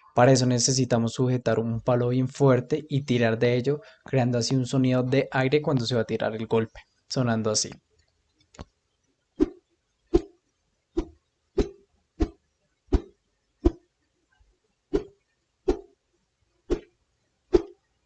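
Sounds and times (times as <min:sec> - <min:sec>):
stick swishing through air: 0:09.4 - 0:10.4, 0:11.0 - 0:13.8, 0:14.9 - 0:16.0, 0:16.7 - 0:17.8.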